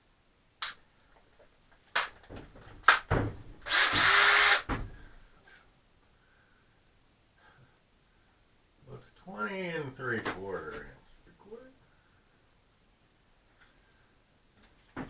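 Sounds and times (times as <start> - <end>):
drill and bit clicking: 3.6 - 4.7
power drill motor whine: 3.7 - 4.7.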